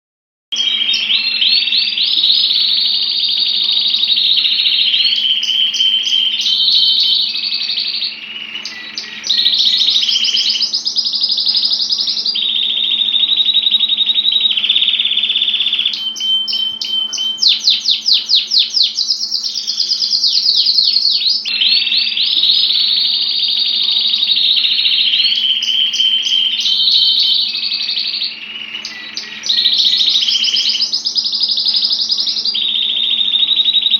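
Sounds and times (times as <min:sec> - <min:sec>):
canary singing trills: 0:00.5 - 0:33.9.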